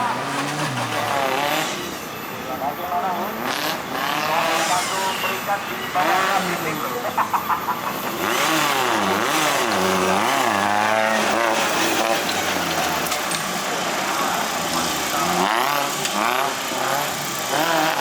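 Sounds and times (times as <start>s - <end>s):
off-road engine revving: 0.0s - 18.0s.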